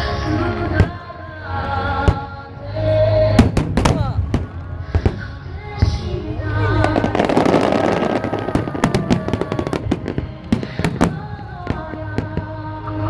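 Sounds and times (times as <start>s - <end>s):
music playing: 0.0s - 13.0s
fireworks bursting and crackling: 3.4s - 12.6s.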